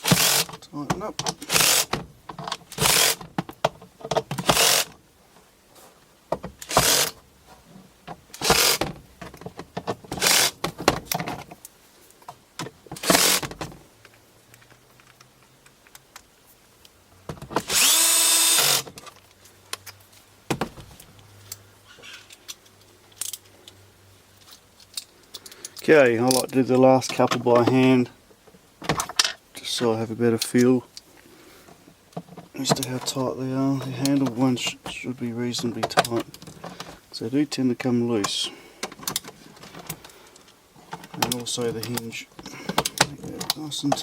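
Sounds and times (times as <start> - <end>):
power drill driving screws: 0.0 - 0.5, 1.4 - 1.9, 2.7 - 3.3, 4.4 - 4.9, 6.6 - 7.2, 8.4 - 8.8, 10.2 - 10.6, 13.0 - 13.5, 17.6 - 18.9.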